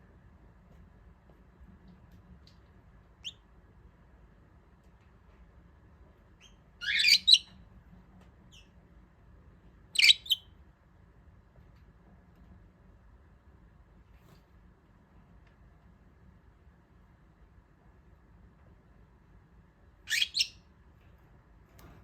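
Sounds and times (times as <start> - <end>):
budgerigar chirp: 6.4 - 7.5, 10.0 - 10.4, 20.1 - 20.6
budgerigar sharp calls: 6.8 - 7.5.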